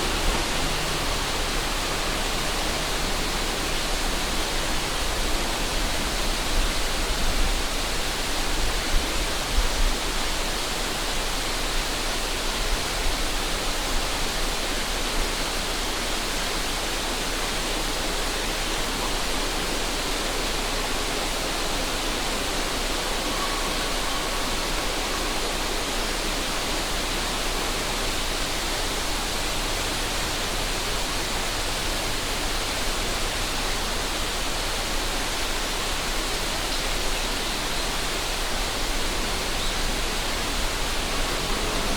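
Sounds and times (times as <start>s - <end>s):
wind buffeting microphone: 0.0s - 10.3s
river rushing: 0.0s - 41.9s.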